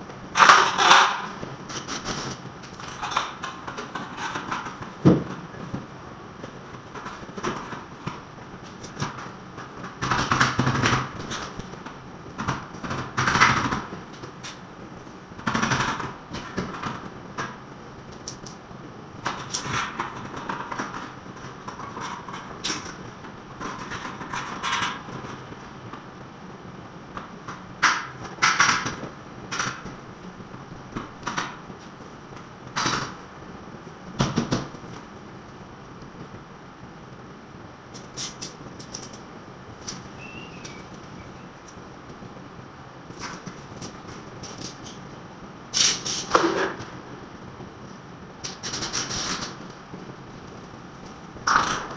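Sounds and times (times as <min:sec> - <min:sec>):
steady background hiss: 0:25.2 - 0:51.9.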